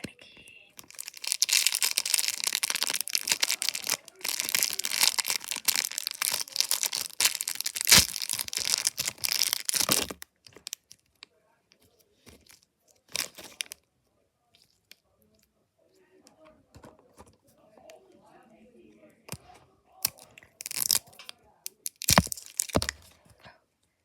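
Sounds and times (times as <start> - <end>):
packaging crinkling and tearing: 0.8 - 10.9, 12.4 - 13.8, 20.0 - 23.1.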